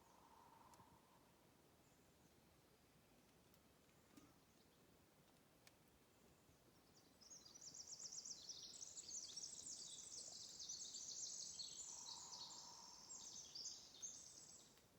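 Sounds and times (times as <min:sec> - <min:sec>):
songbird twittering: 0:09.1 - 0:14.7.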